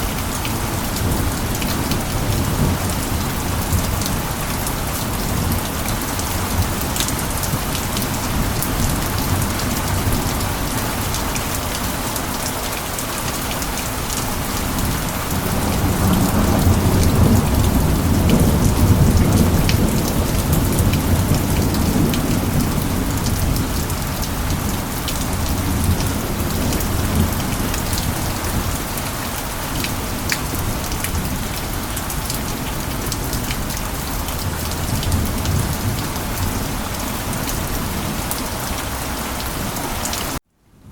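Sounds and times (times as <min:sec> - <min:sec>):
steady rain: 0:00.0 - 0:40.9
distant thunder rumble: 0:14.1 - 0:29.0.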